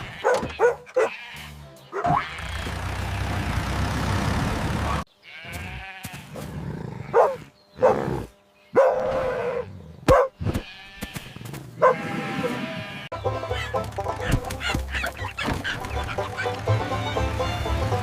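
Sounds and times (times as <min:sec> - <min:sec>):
sheep bleating: 0:00.0 - 0:02.7, 0:05.2 - 0:06.4, 0:10.7 - 0:13.2.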